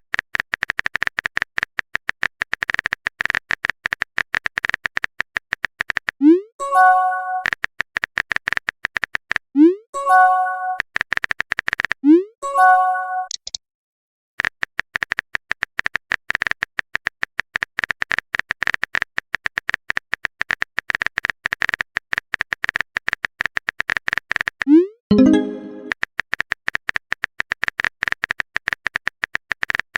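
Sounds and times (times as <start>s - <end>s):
rising pop and chime: 25.1s - 25.9s.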